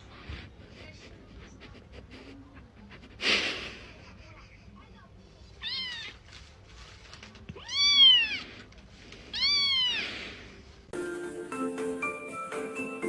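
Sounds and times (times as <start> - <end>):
cat meowing: 5.6 - 6.3, 7.5 - 8.6, 9.3 - 10.3
keyboard music: 11.0 - 13.0.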